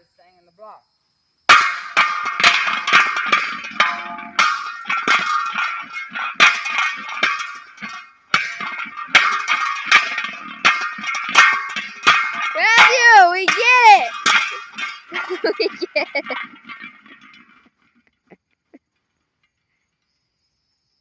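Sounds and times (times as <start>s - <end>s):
loud metal clangs: 1.5s - 17.8s.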